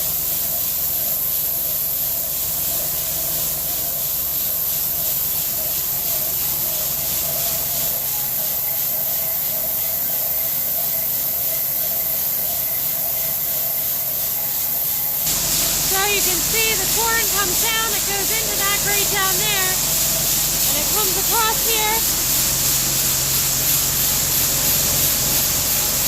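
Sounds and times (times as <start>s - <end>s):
corn pouring into grate: 11.8s - 26.0s
machine hum: 15.3s - 26.0s.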